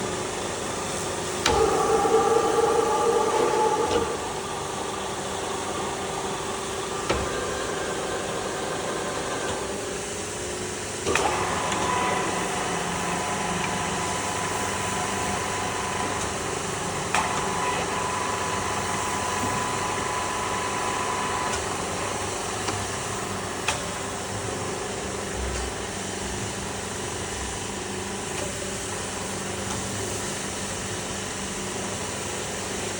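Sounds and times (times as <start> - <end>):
drilling machine motor hum: 0.0 - 26.8
high-pitched machine whine: 1.3 - 21.4.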